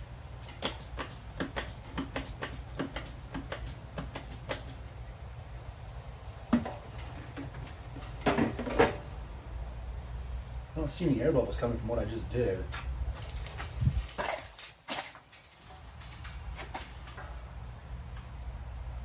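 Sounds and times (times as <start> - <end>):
steady low hum: 0.0 - 14.5, 15.6 - 19.0
sharp clicks and taps: 0.6 - 4.7.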